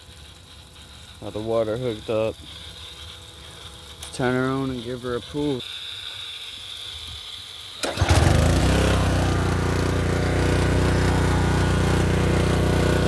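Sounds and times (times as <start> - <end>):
small engine running: 0.0 - 13.0
recoil starter pull: 7.1 - 13.0.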